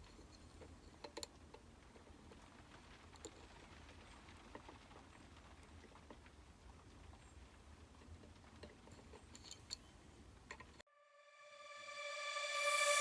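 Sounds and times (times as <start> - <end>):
low hum: 10.9 - 13.0.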